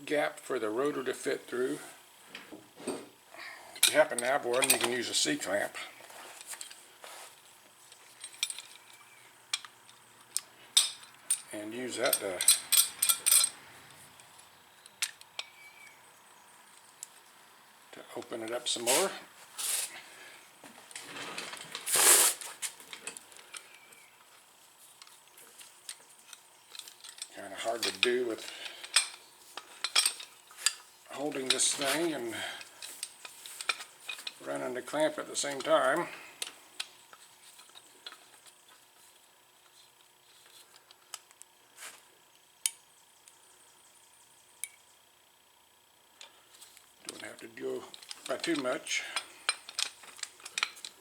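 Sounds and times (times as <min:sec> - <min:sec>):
metal clamp clicking and clinking: 0:08.2 - 0:13.6, 0:25.9 - 0:34.4, 0:47.9 - 0:51.0
short metal scrape: 0:21.1 - 0:22.5.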